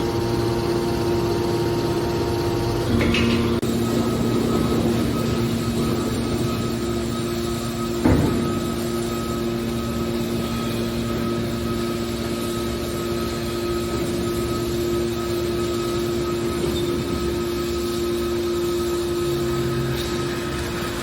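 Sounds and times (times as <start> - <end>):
baler machine humming: 0.0 - 21.0
sharp metal clank: 2.9 - 3.6.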